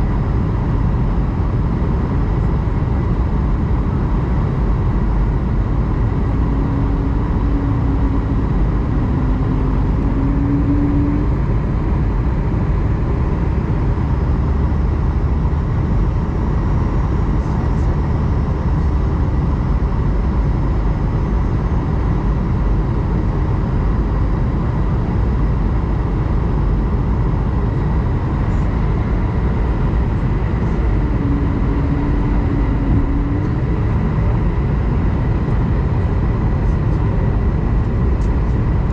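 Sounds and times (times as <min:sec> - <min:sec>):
airliner cabin roar: 0:00.0 - 0:38.9
faint engine whines: 0:00.0 - 0:38.9
wavering hum: 0:02.9 - 0:21.4, 0:26.6 - 0:38.9.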